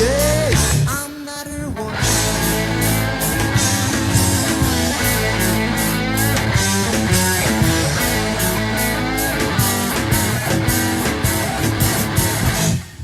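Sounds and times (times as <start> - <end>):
rock band playing: 0.0 - 13.0
cymbals keeping a beat: 2.0 - 12.7.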